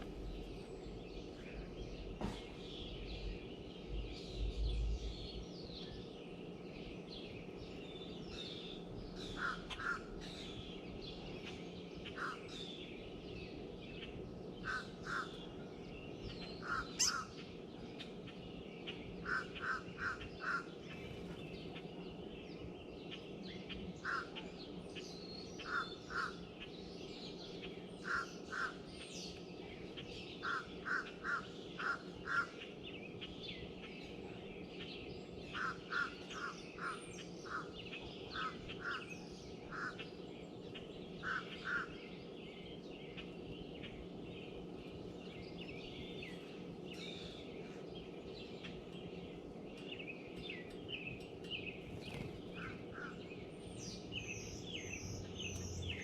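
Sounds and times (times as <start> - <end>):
birds chirping and twittering: 0.0 - 56.0
bird short calls: 16.6 - 17.4.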